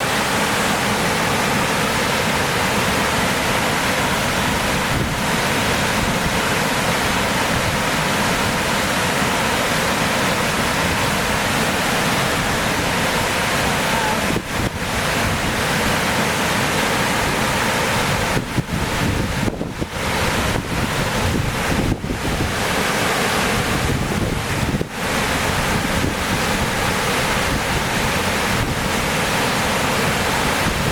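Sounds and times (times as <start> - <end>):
waterfall rushing: 0.0 - 30.9.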